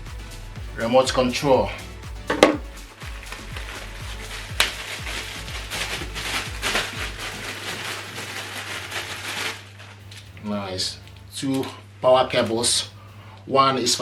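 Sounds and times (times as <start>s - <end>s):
background music with bass beat: 0.0s - 8.2s
rustling of boxes: 2.4s - 10.3s.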